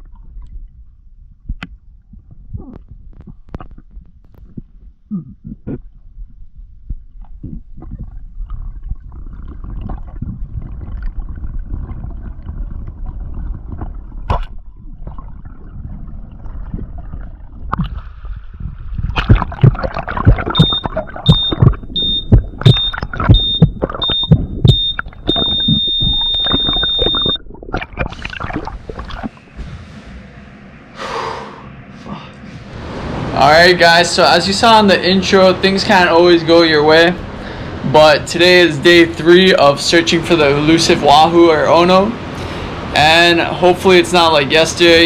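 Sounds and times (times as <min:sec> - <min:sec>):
low steady rumbling: 0:00.0 - 0:45.0
high electronic beep: 0:20.5 - 0:27.4.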